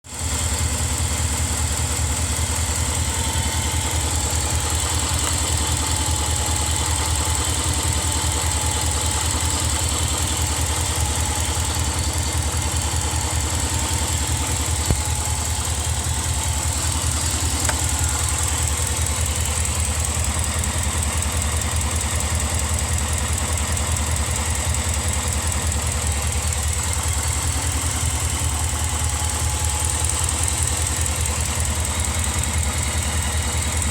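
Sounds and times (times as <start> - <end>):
engine idling: 0.1 - 33.9.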